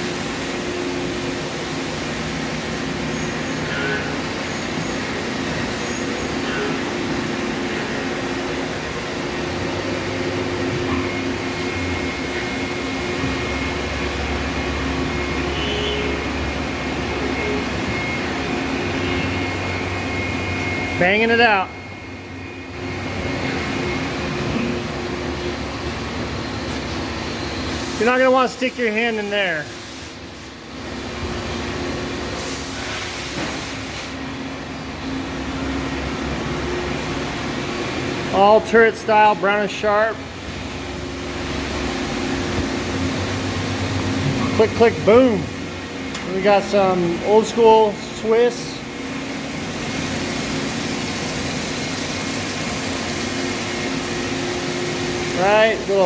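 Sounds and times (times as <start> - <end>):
machinery hum and whine: 0.0 - 56.0
lathes running: 23.0 - 34.2, 40.6 - 56.0
loud hiss: 27.6 - 30.5, 32.3 - 34.2.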